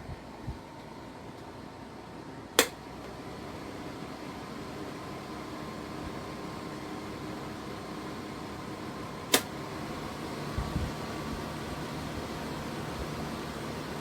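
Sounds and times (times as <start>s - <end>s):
fan humming: 0.0s - 14.0s
sharp click: 2.6s - 2.8s, 9.3s - 9.5s.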